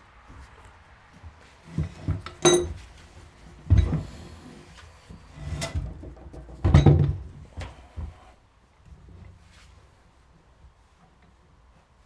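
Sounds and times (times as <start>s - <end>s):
metal tool clanking: 2.4s - 2.8s.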